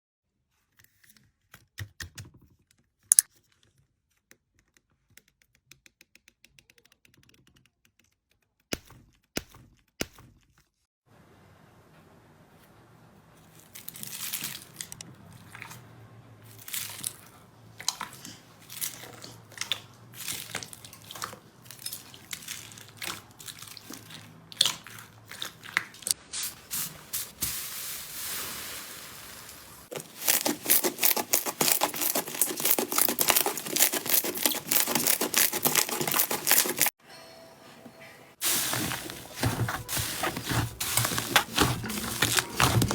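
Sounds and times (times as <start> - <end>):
slime squishing and crackling: 29.9 - 36.9, 39.9 - 42.9.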